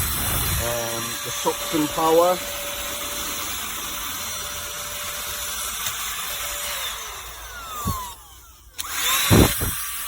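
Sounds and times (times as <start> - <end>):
handheld vacuum motor whining: 0.0 - 10.0.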